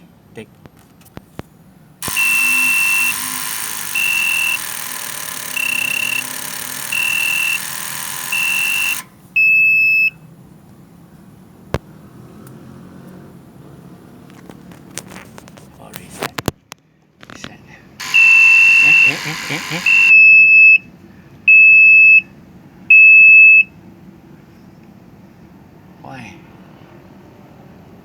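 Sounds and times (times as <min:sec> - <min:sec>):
control panel alarm beeping: 0:02.0 - 0:10.2, 0:18.0 - 0:20.8
loud steady hiss: 0:18.0 - 0:20.2.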